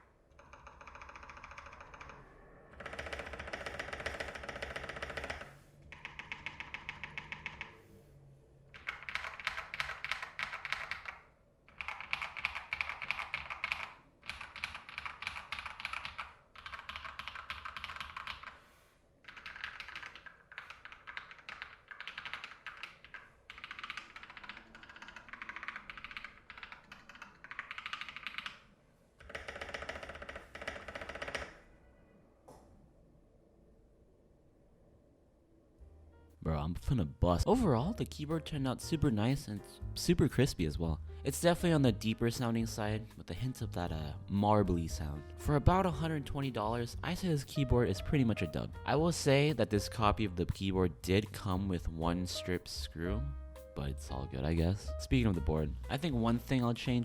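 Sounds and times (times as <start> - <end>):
mechanical keyboard typing: 0.4 - 2.2, 2.8 - 7.8, 8.8 - 18.6, 19.3 - 28.6, 29.2 - 31.6.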